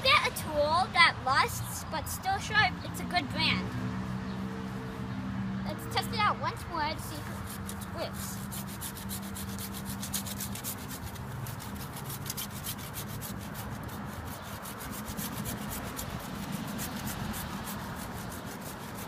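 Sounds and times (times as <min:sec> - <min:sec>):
hand saw rasping through wood: 0:06.9 - 0:19.0.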